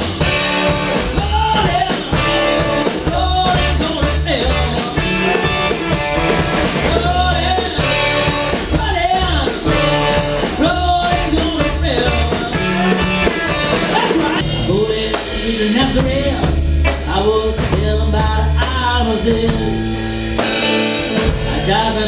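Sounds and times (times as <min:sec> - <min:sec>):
electric guitar lead melody: 0:00.0 - 0:15.2
bass line: 0:00.0 - 0:22.0
drums keeping a steady beat: 0:00.0 - 0:22.0.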